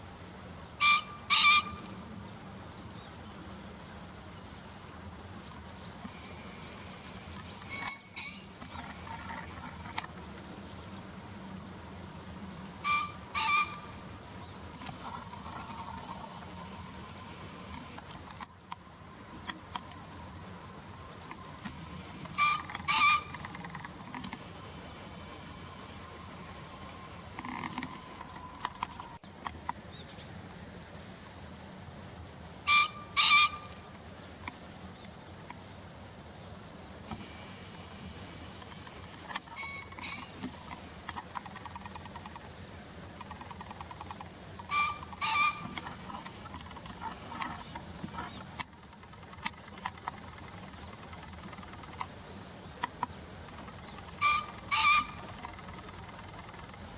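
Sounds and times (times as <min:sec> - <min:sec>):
pheasant crowing: 0:00.8 - 0:01.9, 0:06.0 - 0:10.1, 0:12.8 - 0:14.0, 0:21.6 - 0:24.3, 0:32.7 - 0:33.8, 0:39.1 - 0:42.4, 0:43.2 - 0:52.0, 0:53.5 - 0:56.9.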